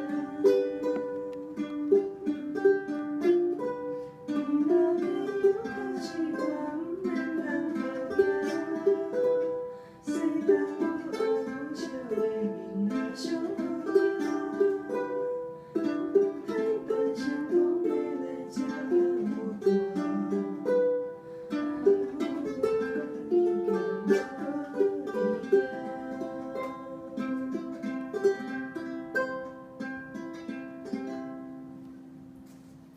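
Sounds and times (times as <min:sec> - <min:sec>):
ukuleles strummed and plucked: 0:00.0 - 0:32.9.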